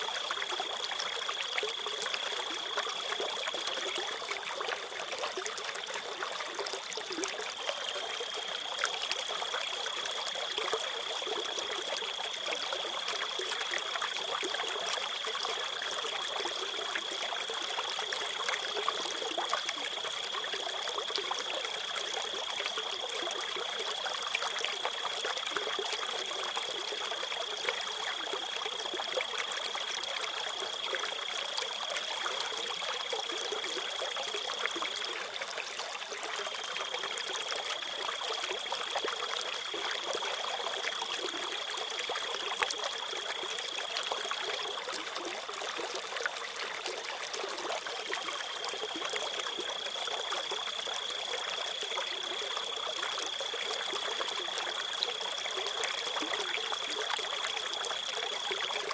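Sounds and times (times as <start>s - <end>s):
trickling stream: 0.0s - 58.9s
crickets trilling: 36.4s - 45.1s, 48.1s - 58.9s.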